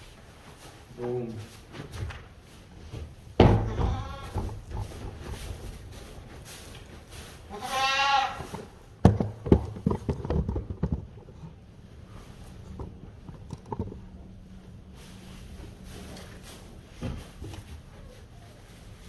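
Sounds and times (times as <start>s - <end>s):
sharp knocks and thumps: 2.9s - 7.1s, 8.4s - 14.3s
goats bleating: 3.6s - 4.5s, 7.5s - 8.7s.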